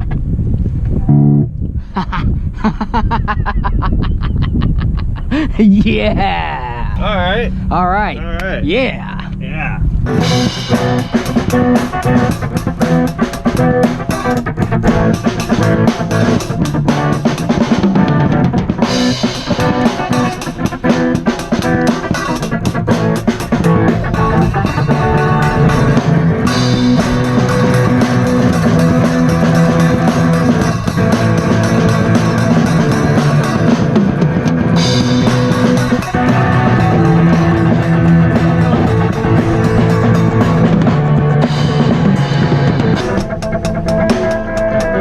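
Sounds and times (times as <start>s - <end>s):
distorted electric guitar chords: 1.1s - 1.7s, 5.7s - 45.0s
drum hits: 10.1s - 45.0s.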